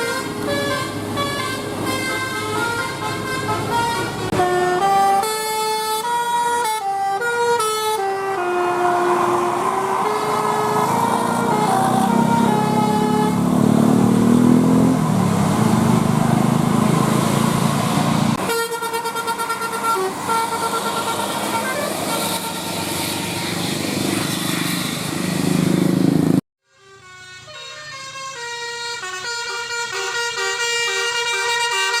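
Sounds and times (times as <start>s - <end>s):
musical air horns playing a tune: 0.0s - 13.9s, 18.4s - 23.3s, 26.7s - 32.0s
bus engine rumble: 0.0s - 26.4s.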